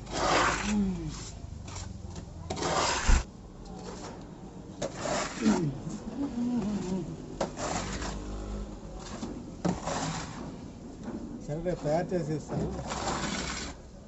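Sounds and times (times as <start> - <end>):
putty blade scraping wall: 0.0 - 4.1, 4.8 - 5.7, 7.4 - 8.3, 9.0 - 10.6, 12.6 - 13.8
low wavering voice: 0.6 - 1.3, 5.4 - 7.2.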